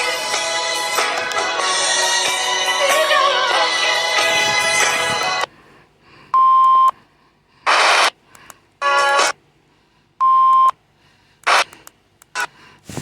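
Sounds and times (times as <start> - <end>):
music: 0.0 - 5.5.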